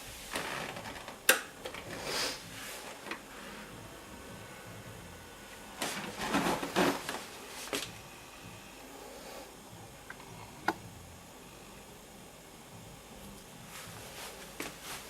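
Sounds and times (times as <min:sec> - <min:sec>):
rustling handling noise: 0:05.8 - 0:07.9.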